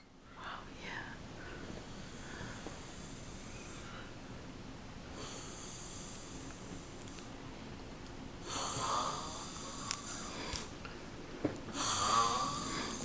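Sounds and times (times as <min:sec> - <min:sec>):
person snoring: 0:08.4 - 0:10.7, 0:11.7 - 0:13.0.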